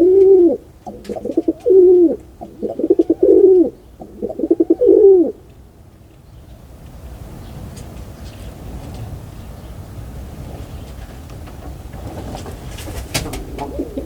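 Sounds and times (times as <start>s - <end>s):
pigeon cooing: 0.0s - 5.4s, 12.9s - 14.0s
faint low hiss: 0.0s - 14.0s.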